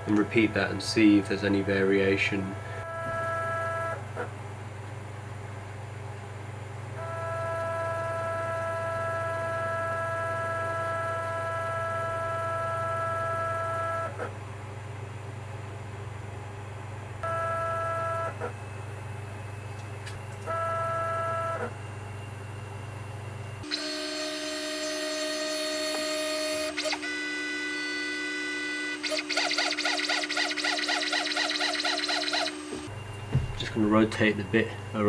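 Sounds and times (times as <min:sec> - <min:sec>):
stepper motors whining: 0:23.6 - 0:35.0.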